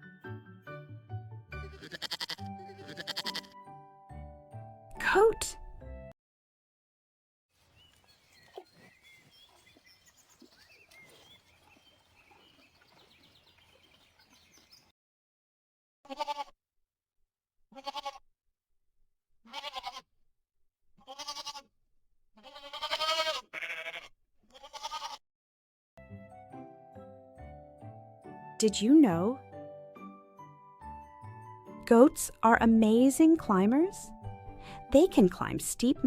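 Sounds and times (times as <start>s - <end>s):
goat bleating: 1.6s - 3.6s, 16.1s - 16.6s, 17.7s - 18.2s, 19.4s - 20.1s, 21.0s - 21.7s, 22.4s - 25.2s.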